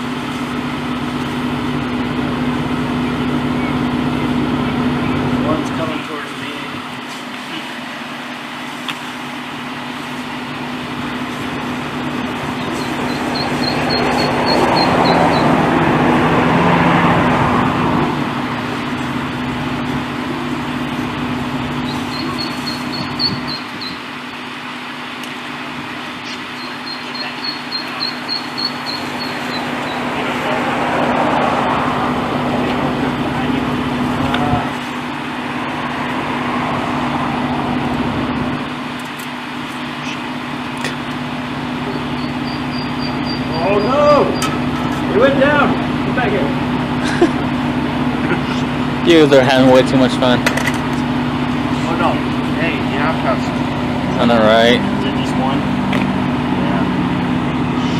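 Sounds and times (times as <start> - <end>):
fire truck engine idling: 0.0 - 57.9
high rapid peeping: 12.2 - 16.2, 21.8 - 24.1, 26.5 - 30.8
rushing noise: 26.3 - 38.9.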